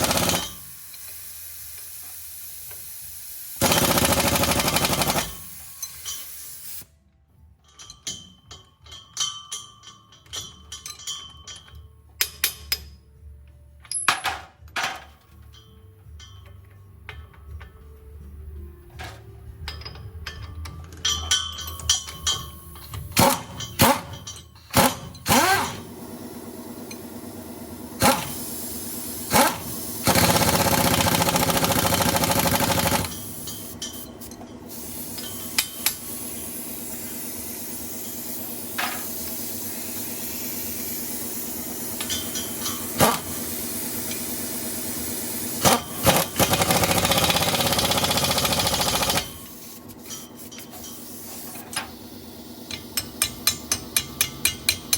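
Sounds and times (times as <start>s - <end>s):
metal knocks and clanks: 18.8s - 25.3s.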